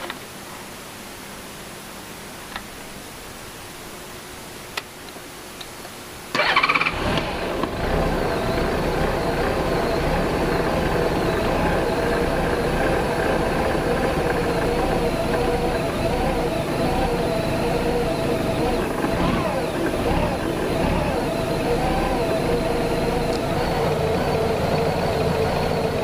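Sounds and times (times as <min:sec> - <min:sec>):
motorcycle engine starting and idling: 0:06.3 - 0:26.0.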